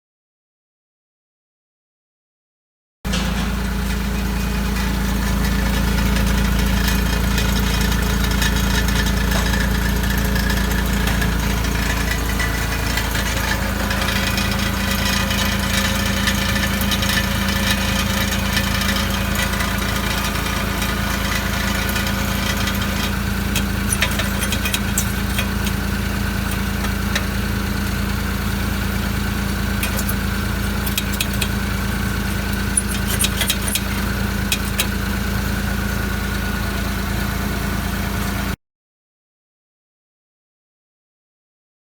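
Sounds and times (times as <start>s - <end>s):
heat shield metallic rattle: 3.1s - 35.8s
car engine idling: 3.1s - 38.6s.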